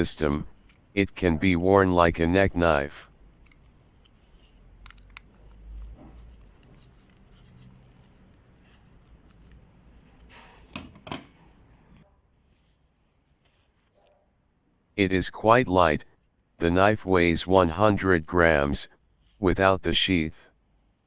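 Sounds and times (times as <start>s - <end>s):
faint rubbing of knife sheath: 0.0s - 10.8s
sharp plastic clicks: 3.0s - 7.2s.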